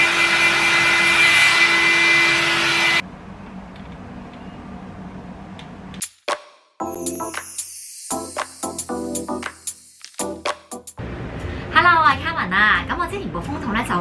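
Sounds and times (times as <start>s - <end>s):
hair dryer blowing: 0.0s - 3.0s.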